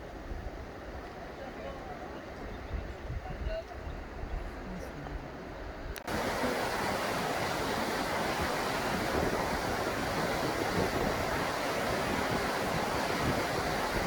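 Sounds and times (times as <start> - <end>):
waterfall roaring: 6.0 - 14.0.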